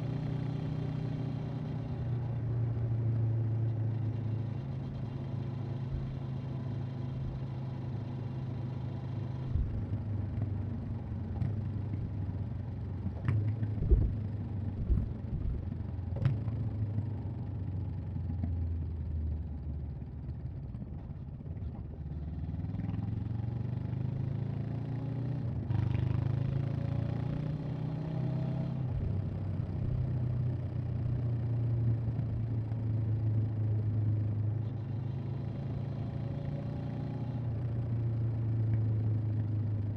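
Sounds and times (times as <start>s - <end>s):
motorcycle engine and exhaust: 0.0s - 39.9s.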